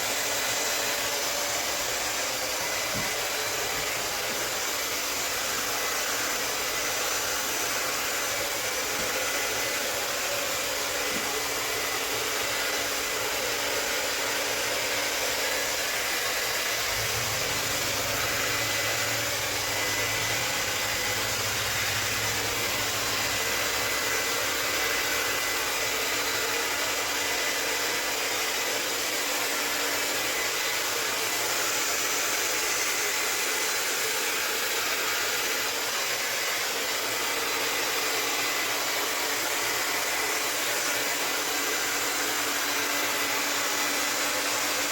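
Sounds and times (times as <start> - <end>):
hair dryer blowing: 0.0 - 44.9.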